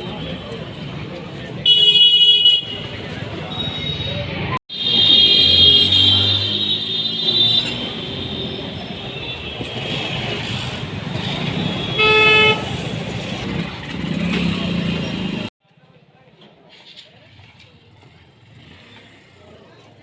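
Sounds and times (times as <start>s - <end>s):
street traffic noise: 0.0s - 20.0s
vehicle horn honking: 1.6s - 2.9s, 4.7s - 9.9s, 11.6s - 12.8s.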